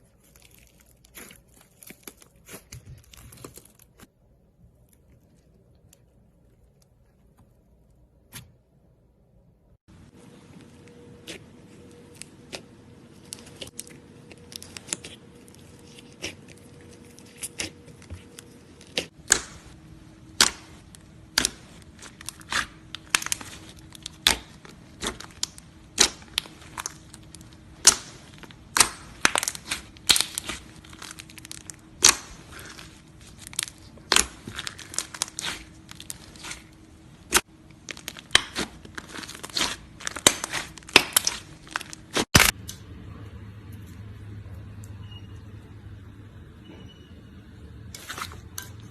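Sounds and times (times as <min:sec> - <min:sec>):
slime popping and crackling: 0:18.8 - 0:42.6.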